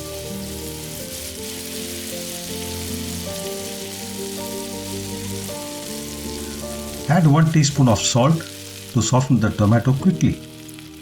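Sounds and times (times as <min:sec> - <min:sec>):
background music with held notes: 0:00.0 - 0:11.0
food sizzling in oil: 0:00.0 - 0:11.0.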